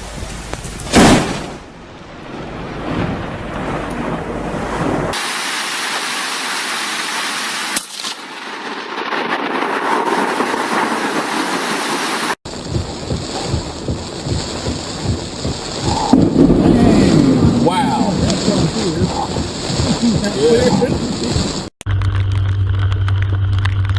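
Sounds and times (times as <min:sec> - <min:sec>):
heavy rain: 0:00.0 - 0:21.7
thunder crack: 0:00.8 - 0:05.2, 0:12.5 - 0:21.7
thunder rumbling: 0:00.8 - 0:05.2, 0:12.5 - 0:21.7.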